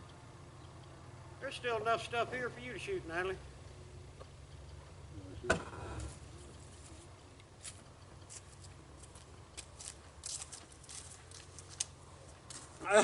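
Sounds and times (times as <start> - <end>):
faint clicks and rustles: 3.6 - 12.8.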